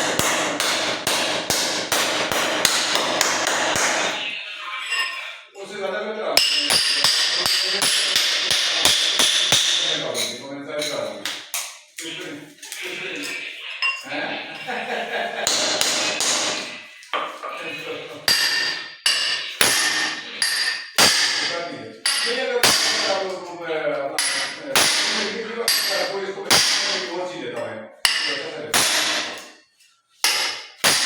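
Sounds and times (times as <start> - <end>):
hammer striking metal: 0.0 - 4.3, 6.4 - 10.4, 15.4 - 16.8, 18.3 - 23.4, 24.2 - 27.2, 28.0 - 29.5, 30.2 - 31.0
person speaking: 12.0 - 18.4.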